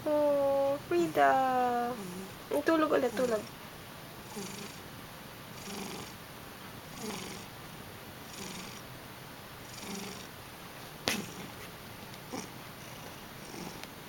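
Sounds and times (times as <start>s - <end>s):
cat snoring: 1.9s - 2.4s, 4.2s - 4.8s, 5.5s - 6.2s, 6.9s - 7.5s, 8.2s - 8.9s, 9.6s - 10.3s, 11.1s - 11.6s, 12.3s - 13.9s.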